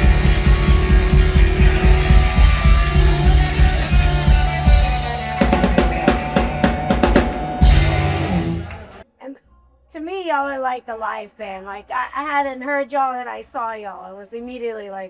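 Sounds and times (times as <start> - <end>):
drum hits: 0.0 - 9.0
live rock band playing: 0.0 - 9.0.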